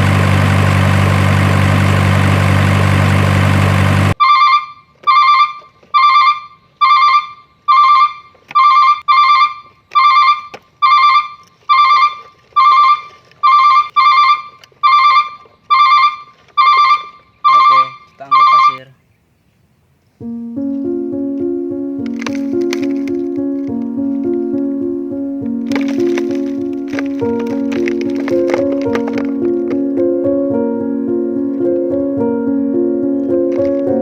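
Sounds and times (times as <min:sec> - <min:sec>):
engine-like drone: 0:00.0 - 0:04.2, 0:22.0 - 0:34.0
short electronic beeps: 0:04.2 - 0:18.9.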